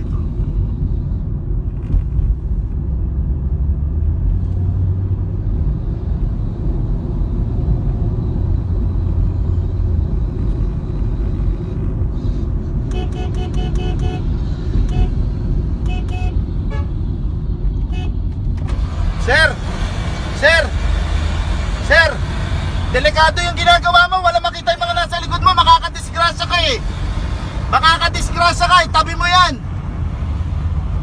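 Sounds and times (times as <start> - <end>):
low rumble of road traffic: 0.0 - 31.0
car horn short beeps: 12.9 - 15.2, 15.8 - 16.9.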